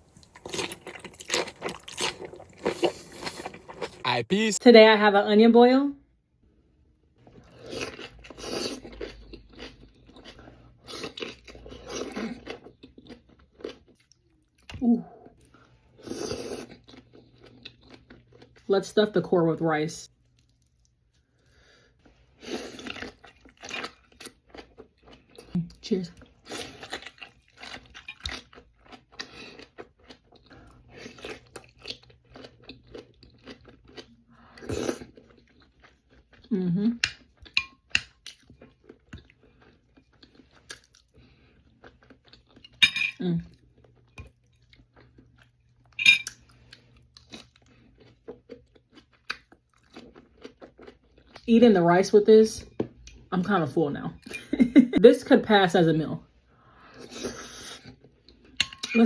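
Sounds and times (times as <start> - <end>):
person chewing wetly: 0.0 - 4.1, 7.2 - 18.7, 22.6 - 42.8, 43.4 - 51.5
wet chewing and biting: 0.0 - 4.1.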